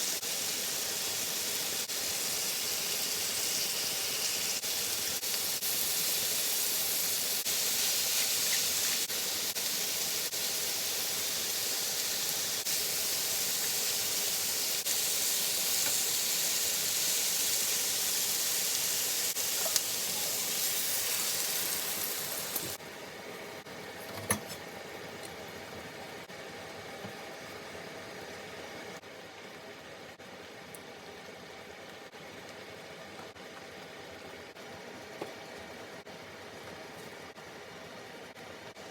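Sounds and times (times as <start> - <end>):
chicken sizzling in a pan: 0.0 - 23.6.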